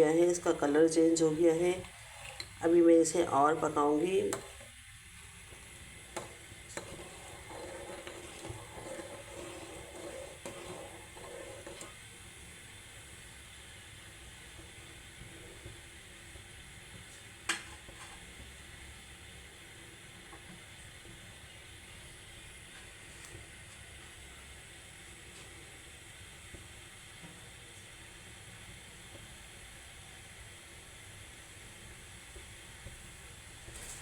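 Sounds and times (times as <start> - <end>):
pot bubbling and simmering: 0.0 - 34.0.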